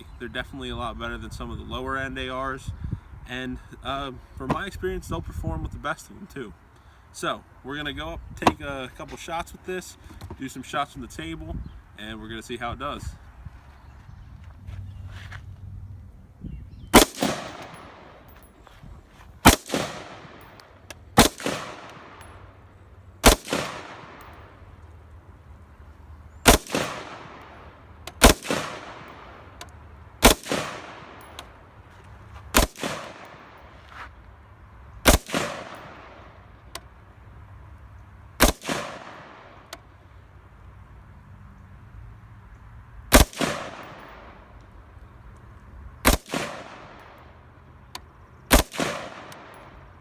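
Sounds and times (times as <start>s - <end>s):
gunshot echo: 16.9s - 18.3s, 19.4s - 20.5s, 21.2s - 22.3s, 23.2s - 24.4s, 26.5s - 27.6s, 28.2s - 29.4s, 30.2s - 31.2s, 32.6s - 33.6s, 35.0s - 36.2s, 38.4s - 39.5s, 43.1s - 44.3s, 46.0s - 47.0s, 48.5s - 49.6s
rifle single shots: 16.9s - 18.5s, 19.4s - 24.9s, 26.4s - 31.6s, 32.5s - 33.8s, 35.0s - 36.8s, 38.4s - 39.8s, 43.1s - 44.5s, 46.0s - 47.2s, 48.5s - 49.8s.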